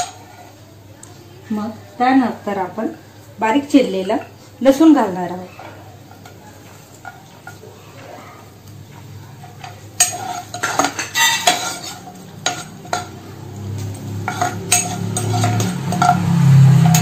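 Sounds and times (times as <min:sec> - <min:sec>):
metal spoon scraping a pan: 0:00.0 - 0:00.6, 0:05.3 - 0:17.0
onion frying in oil: 0:00.0 - 0:17.0.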